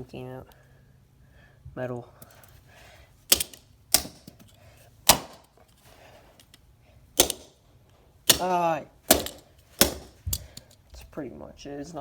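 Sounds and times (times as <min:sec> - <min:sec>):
hammer striking plastic toy: 0:03.3 - 0:04.4, 0:05.1 - 0:05.5, 0:07.2 - 0:07.6, 0:08.3 - 0:10.5.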